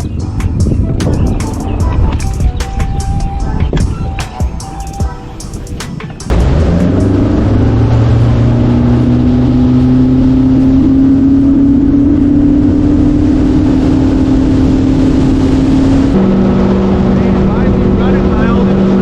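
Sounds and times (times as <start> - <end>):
rushing noise: 0.0 - 19.0
outboard motor running: 6.3 - 19.0.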